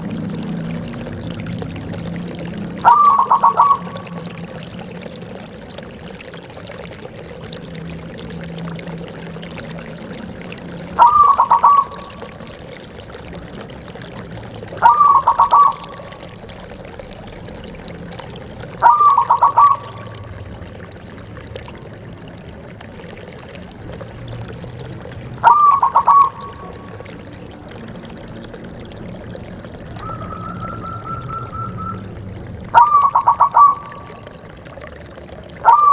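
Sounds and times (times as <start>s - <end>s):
dove cooing: 2.8s - 4.6s, 10.9s - 12.5s, 14.8s - 16.5s, 18.7s - 20.0s, 25.4s - 27.0s, 29.9s - 34.3s, 35.6s - 35.9s.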